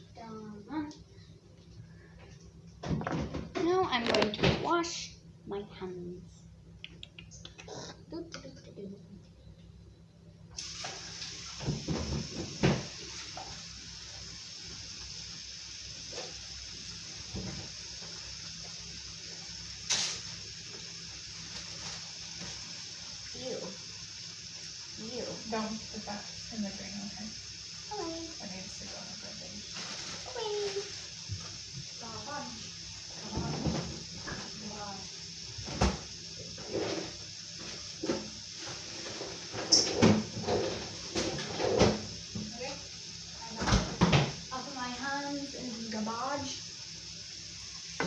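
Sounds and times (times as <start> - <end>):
tap water running into sink: 10.6 - 48.0.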